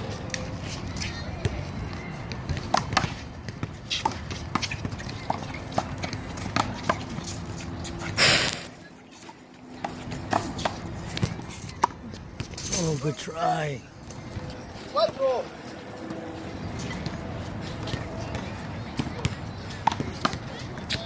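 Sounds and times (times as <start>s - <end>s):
rushing noise burst: 8.2s - 8.7s.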